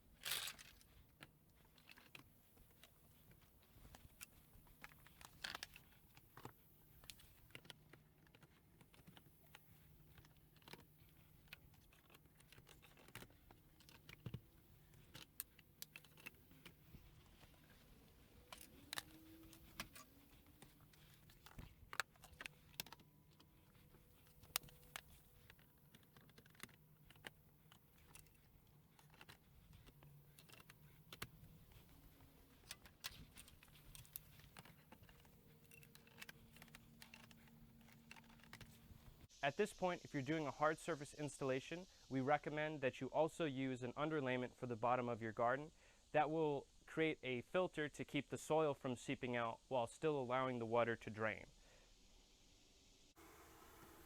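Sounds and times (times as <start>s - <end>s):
plastic parts clicking and knocking: 0.0s - 39.2s.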